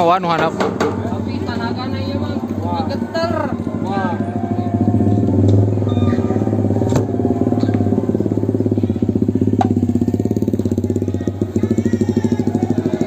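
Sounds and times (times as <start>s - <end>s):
engine idling: 0.0s - 13.0s
sharp knocks: 0.3s - 1.0s.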